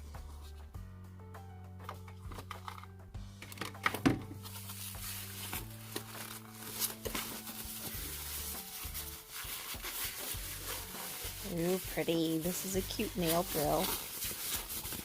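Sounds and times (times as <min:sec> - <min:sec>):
soft background music: 0:00.0 - 0:15.0
packaging rustling: 0:03.7 - 0:15.0.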